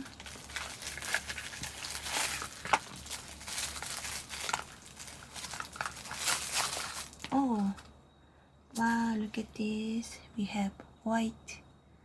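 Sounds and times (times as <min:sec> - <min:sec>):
plastic packaging crinkling: 0:00.0 - 0:07.9.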